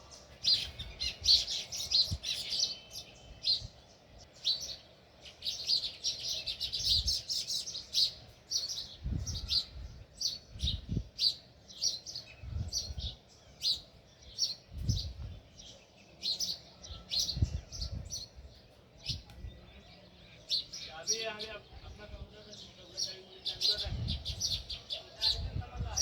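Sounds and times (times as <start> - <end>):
sparrows chirping: 0.0 - 26.0.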